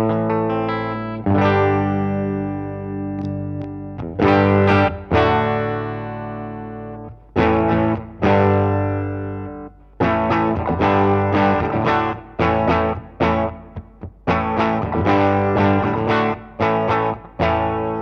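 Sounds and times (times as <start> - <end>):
distorted electric guitar chords: 0.0 - 18.0.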